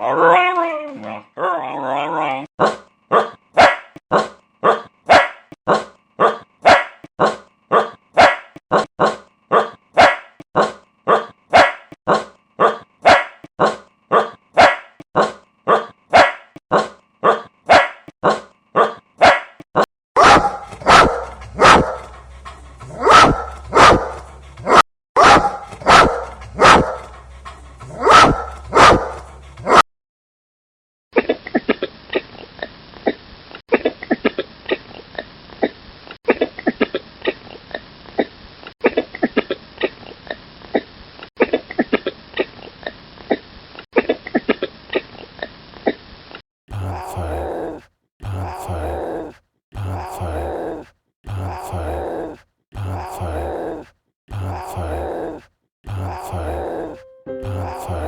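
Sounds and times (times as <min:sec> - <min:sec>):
animal barking: 0:00.0 - 0:19.6, 0:20.2 - 0:29.8, 0:46.7 - 0:58.0.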